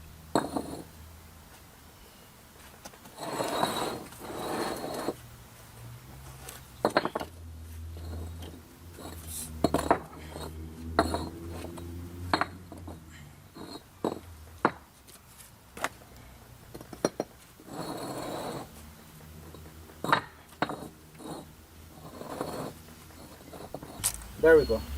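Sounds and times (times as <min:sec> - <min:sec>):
metal tools clinking: 0:22.2 - 0:24.9.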